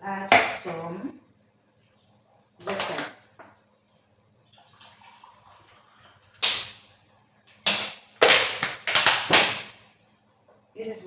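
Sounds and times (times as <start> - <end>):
water pouring into bowl: 4.5 - 6.4.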